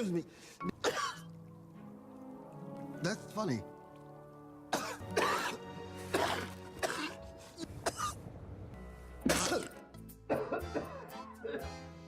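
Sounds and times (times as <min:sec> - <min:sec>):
soft background music: 0:00.0 - 0:12.0
man coughing: 0:00.8 - 0:01.3, 0:04.7 - 0:07.2, 0:09.3 - 0:11.6.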